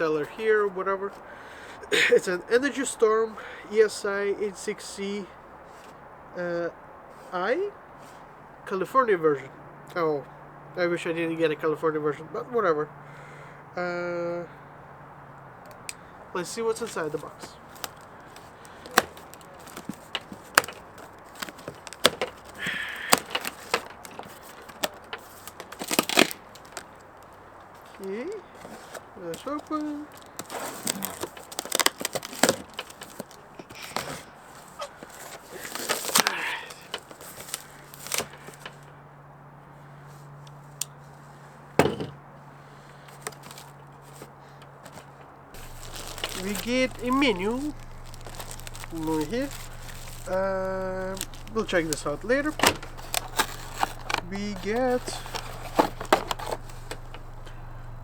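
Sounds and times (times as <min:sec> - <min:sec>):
cardboard scraping: 0:17.2 - 0:26.9, 0:29.8 - 0:34.2, 0:45.6 - 0:58.0
cardboard box handled: 0:45.6 - 0:58.0
steady low hum: 0:45.6 - 0:58.0.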